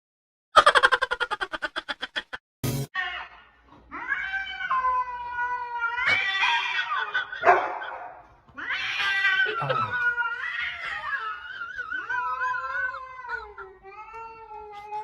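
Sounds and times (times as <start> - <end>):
cat yowling: 3.0 - 8.0, 8.6 - 14.4.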